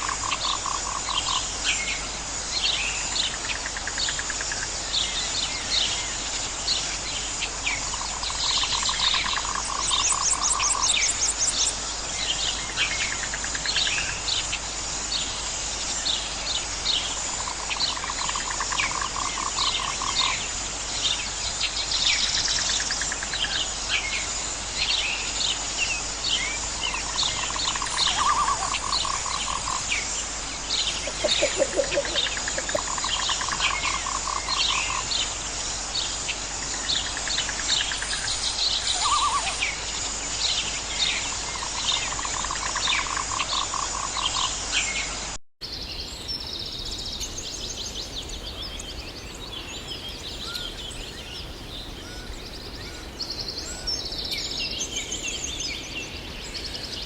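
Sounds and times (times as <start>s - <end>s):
birds chirping: 30.6s - 35.0s, 45.6s - 57.0s.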